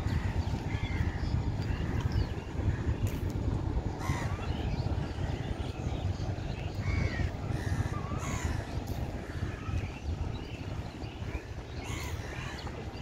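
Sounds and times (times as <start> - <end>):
steady low rumble: 0.0 - 13.0
birds calling harshly: 4.0 - 13.0.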